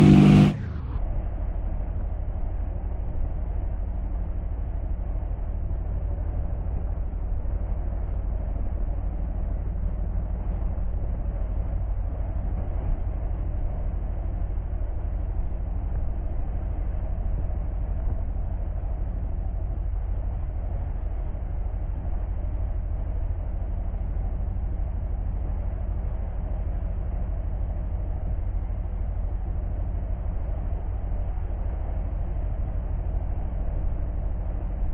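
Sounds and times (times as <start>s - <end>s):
motorcycle engine rumbling: 0.0s - 1.0s
engine running low rumble: 0.0s - 34.9s.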